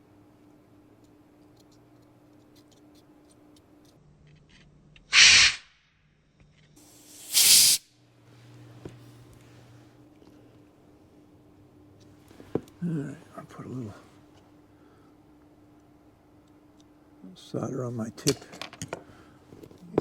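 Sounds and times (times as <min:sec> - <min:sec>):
canned air blasts: 0:05.1 - 0:05.6, 0:06.8 - 0:07.9.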